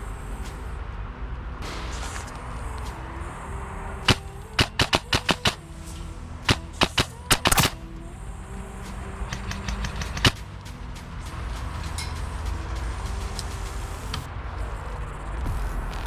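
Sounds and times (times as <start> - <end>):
airsoft gun shots: 6.5 - 7.8.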